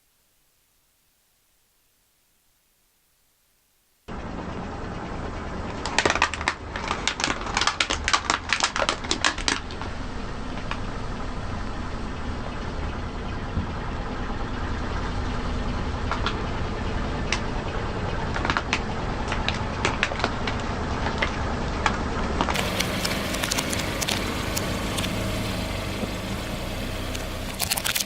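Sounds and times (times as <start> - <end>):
car engine running: 4.1 - 28.0
tyre crushing brittle objects: 5.9 - 9.9, 22.4 - 25.2, 27.5 - 28.0.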